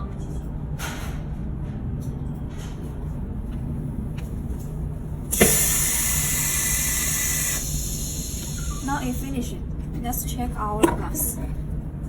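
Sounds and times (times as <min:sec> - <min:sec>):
machine motor humming: 0:05.1 - 0:09.3
loud air hiss: 0:05.3 - 0:09.2.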